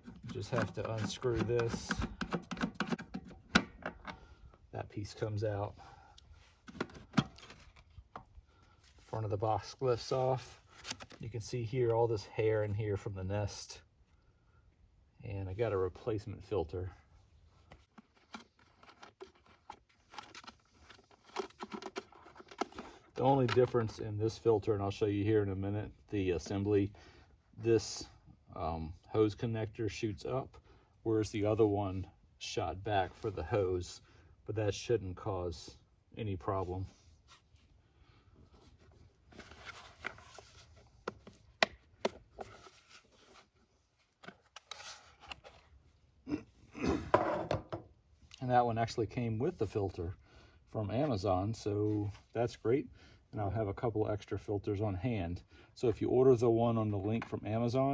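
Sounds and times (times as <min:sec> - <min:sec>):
parts clicking and rustling: 0:00.0 - 0:04.3, 0:17.7 - 0:23.8
rustling: 0:38.5 - 0:46.0.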